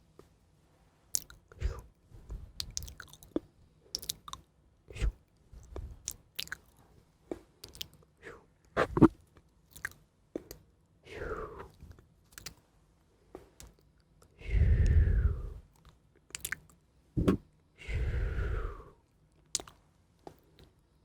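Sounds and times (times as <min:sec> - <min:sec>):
close chewing and crunching: 0:01.2 - 0:01.5, 0:02.6 - 0:04.4, 0:05.6 - 0:06.8, 0:07.6 - 0:08.0, 0:09.7 - 0:10.6, 0:15.7 - 0:16.8
falling-pitch mouth sounds: 0:08.8 - 0:09.1.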